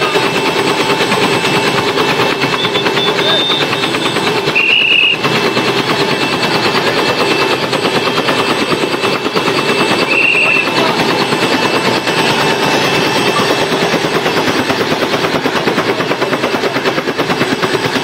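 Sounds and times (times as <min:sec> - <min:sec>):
helicopter rotor chopping: 0:00.0 - 0:18.0
brief high-pitched tones: 0:10.0 - 0:11.0.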